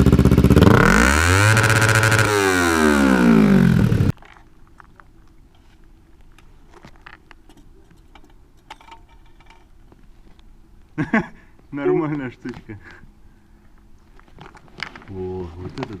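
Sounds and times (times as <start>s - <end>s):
motorcycle engine revving: 0.0s - 4.1s
faint hum: 9.2s - 15.8s.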